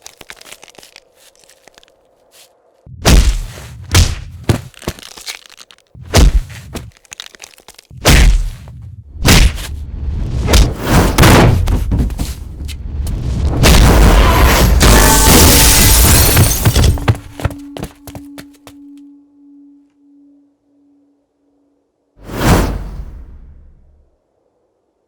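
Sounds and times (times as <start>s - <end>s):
crackles: 0.0s - 16.9s
steady low tone: 7.9s - 10.4s, 17.6s - 22.2s
heavy hits: 7.9s - 18.0s
explosion blast with deep rumble: 8.0s - 15.5s.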